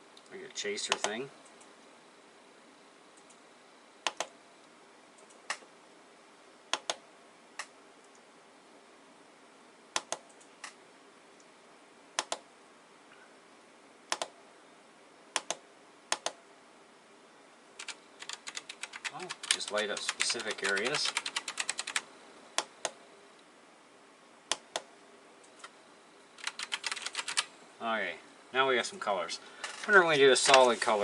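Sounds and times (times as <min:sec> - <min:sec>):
keyboard keys clacking: 0:17.8 - 0:22.0, 0:26.4 - 0:27.5.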